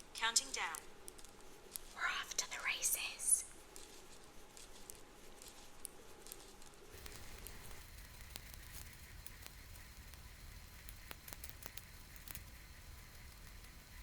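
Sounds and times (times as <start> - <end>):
knitting needles clicking: 3.7 - 14.0.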